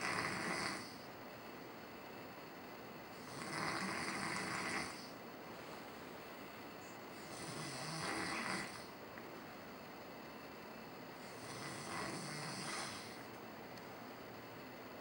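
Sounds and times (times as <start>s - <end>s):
man snoring: 0.0s - 1.0s, 3.2s - 5.2s, 7.2s - 8.9s, 11.2s - 13.2s.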